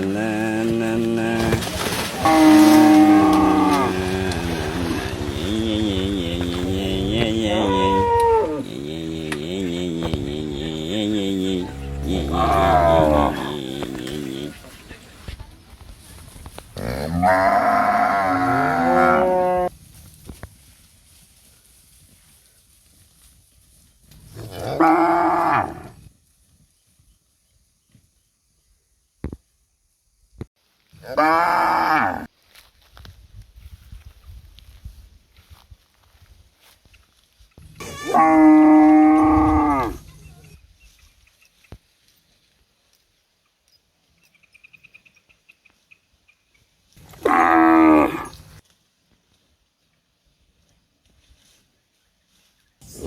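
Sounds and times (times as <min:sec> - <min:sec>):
cow mooing: 0:00.0 - 0:14.6, 0:16.8 - 0:19.7, 0:24.4 - 0:26.0, 0:31.0 - 0:32.3, 0:37.8 - 0:40.1, 0:47.1 - 0:48.4.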